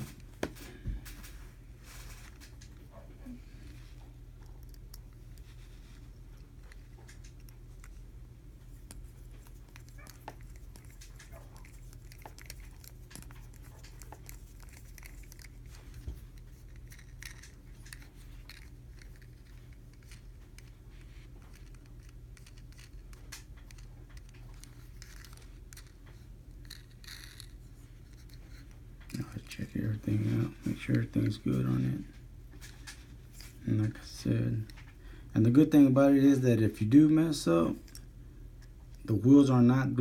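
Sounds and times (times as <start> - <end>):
steady low hum: 0.0 - 40.0
small toy car parts clicking: 21.5 - 28.6.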